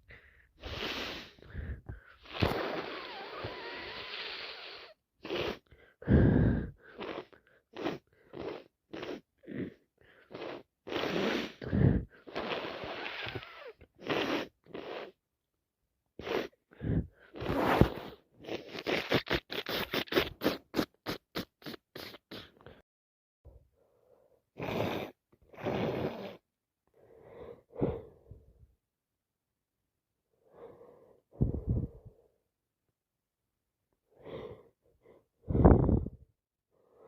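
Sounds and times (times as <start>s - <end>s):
woman blowing her nose: 0.6s - 15.2s, 16.2s - 22.8s, 24.6s - 26.4s.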